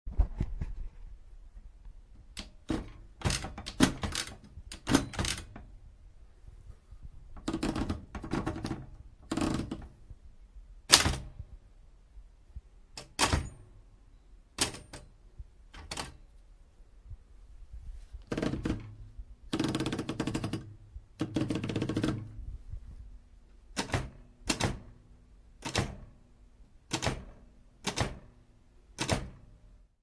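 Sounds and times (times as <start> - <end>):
manual typewriter typing: 2.4 - 5.7, 7.4 - 10.0, 13.0 - 13.6, 14.6 - 15.1, 15.7 - 16.2, 18.2 - 22.3, 23.7 - 25.0, 25.6 - 26.1, 26.9 - 28.3, 28.9 - 29.4.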